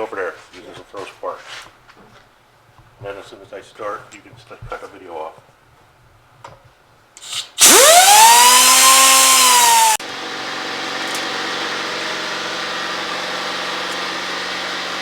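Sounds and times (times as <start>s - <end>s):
power tool cutting metal: 7.2s - 10.0s.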